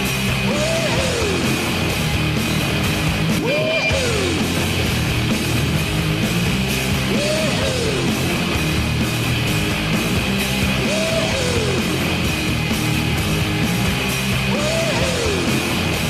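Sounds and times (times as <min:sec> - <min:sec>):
hard rock song with electric guitar: 0:00.0 - 0:16.0.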